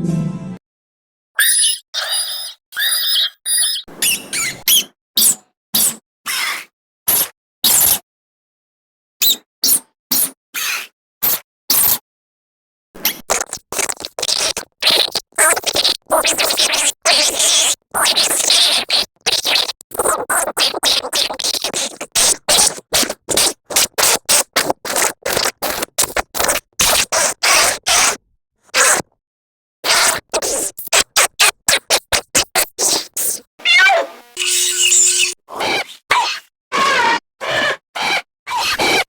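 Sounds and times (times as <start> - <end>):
harsh scratchy stuttering noise: 13.0 - 28.2, 28.8 - 29.1, 29.8 - 35.4.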